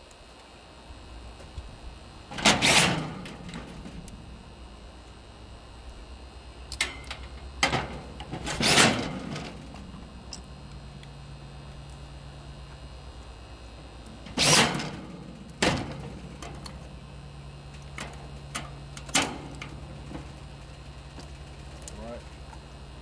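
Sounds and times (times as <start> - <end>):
steady low hum: 0.0 - 23.0
metallic knocks and clatters: 2.3 - 4.6, 6.8 - 11.1, 14.1 - 21.9.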